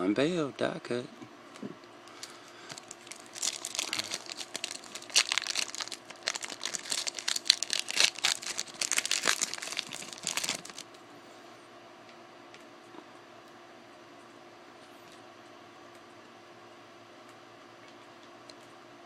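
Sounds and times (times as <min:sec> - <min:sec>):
foil wrapper crinkling and tearing: 0:02.1 - 0:11.0.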